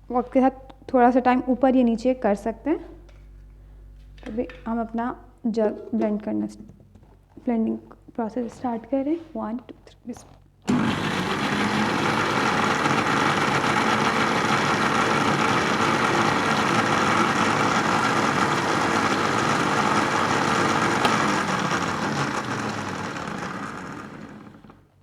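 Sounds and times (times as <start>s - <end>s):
electric blender running: 10.7s - 24.9s.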